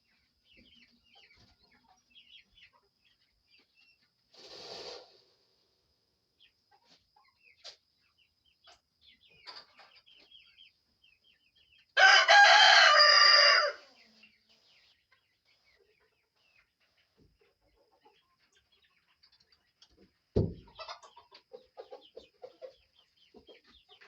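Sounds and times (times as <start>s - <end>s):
chicken clucks: 0.0s - 24.0s
rooster crowing: 12.0s - 13.8s.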